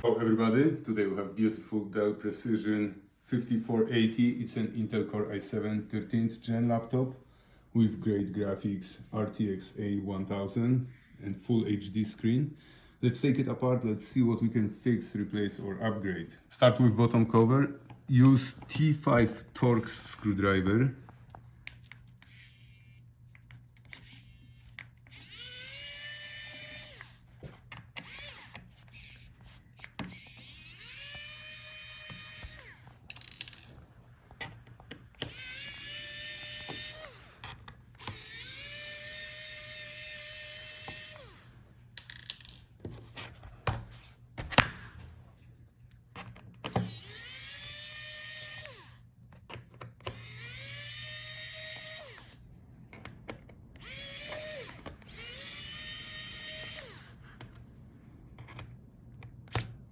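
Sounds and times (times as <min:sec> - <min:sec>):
electric screwdriver motor whine: 0:23.9 - 0:27.3, 0:27.9 - 0:33.7, 0:35.2 - 0:42.3, 0:46.7 - 0:49.0, 0:50.1 - 0:52.4, 0:53.8 - 0:57.2.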